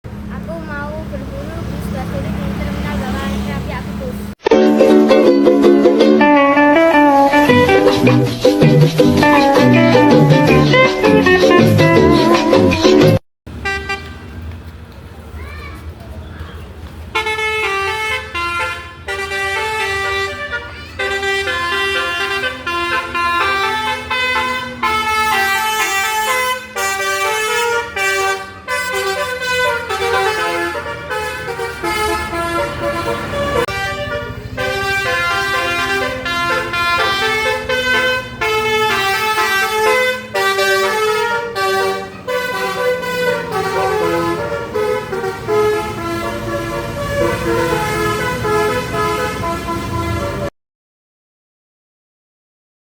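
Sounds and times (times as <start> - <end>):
bus multi-tone air horn: 6.1 - 12.8, 13.5 - 14.3, 17.2 - 50.5.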